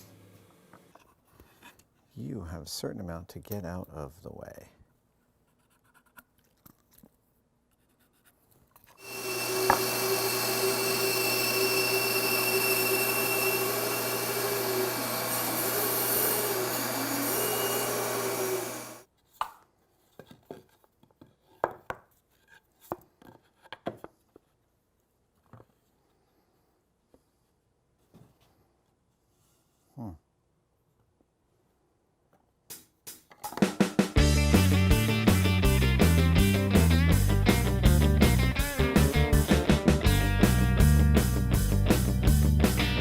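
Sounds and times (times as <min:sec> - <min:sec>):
power tool humming: 0:09.0 - 0:19.0.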